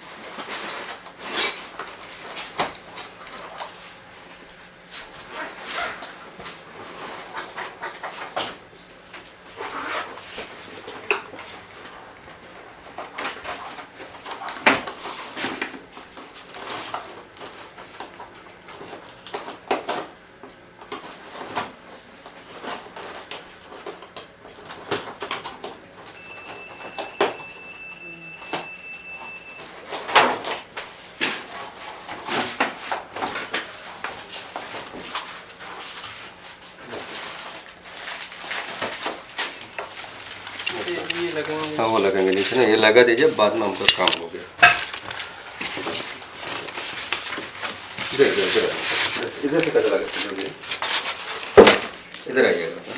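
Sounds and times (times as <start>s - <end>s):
cardboard box being handled: 45.6s - 51.6s.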